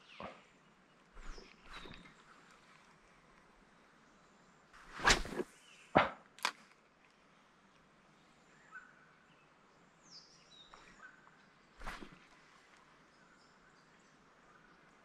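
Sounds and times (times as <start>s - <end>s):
faint bird chirps: 0.0s - 2.8s, 8.1s - 12.2s.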